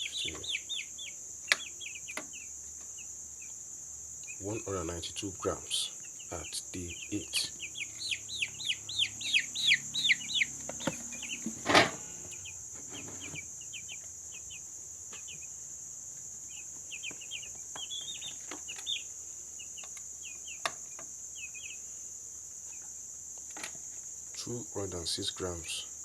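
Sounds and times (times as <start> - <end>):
chicks peeping: 0.0 - 25.9
high-pitched insect drone: 4.2 - 14.7.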